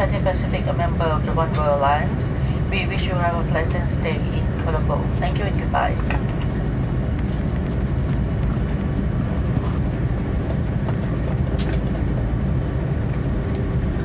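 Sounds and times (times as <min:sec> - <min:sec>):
aircraft cabin low rumble: 0:00.0 - 0:14.0.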